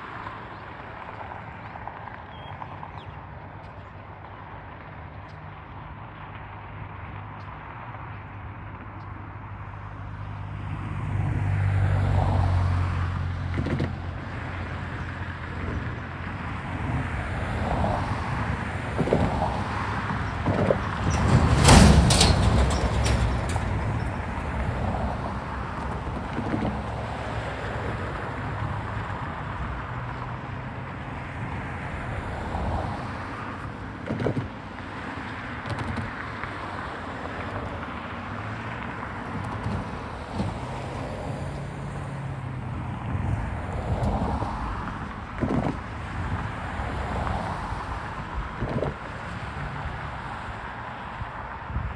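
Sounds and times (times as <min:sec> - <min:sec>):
train wheels rumbling on rail: 0:16.9 - 0:29.0.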